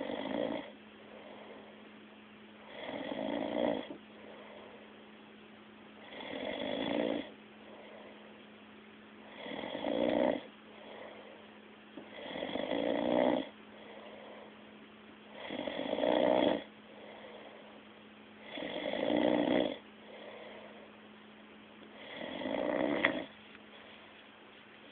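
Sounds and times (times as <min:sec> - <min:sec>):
person snoring: 0:00.0 - 0:01.7, 0:02.7 - 0:04.8, 0:06.0 - 0:08.2, 0:09.3 - 0:11.2, 0:12.1 - 0:14.5, 0:15.3 - 0:17.6, 0:18.4 - 0:20.8, 0:22.0 - 0:23.3
faint steady hum: 0:00.0 - 0:24.9.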